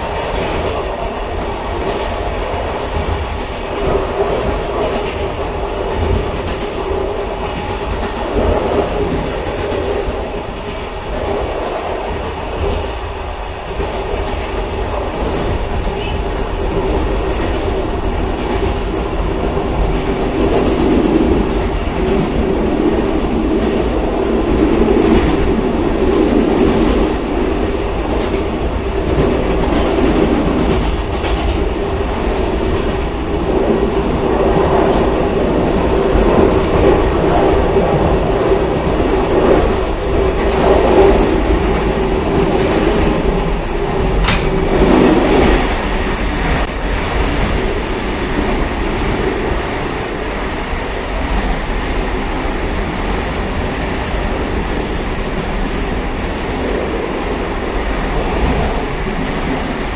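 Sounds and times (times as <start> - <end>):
railcar rumbling on track: 0.0 - 59.9.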